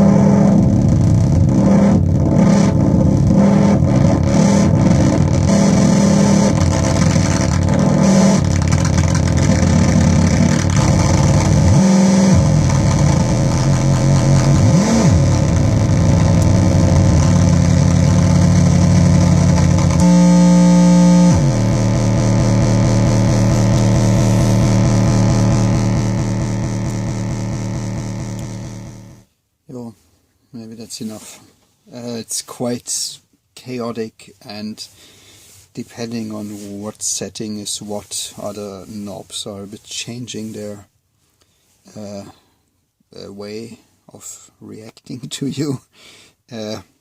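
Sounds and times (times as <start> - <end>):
distorted buzzing synth drone: 0.0 - 29.3.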